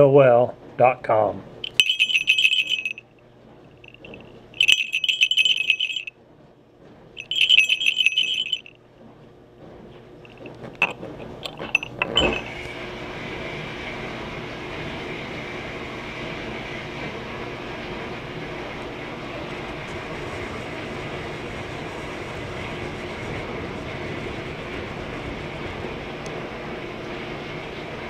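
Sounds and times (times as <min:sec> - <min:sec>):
bells jingling: 0:01.6 - 0:03.0, 0:03.8 - 0:06.1, 0:07.2 - 0:08.7, 0:10.3 - 0:12.7
steady rushing noise: 0:19.2 - 0:28.0.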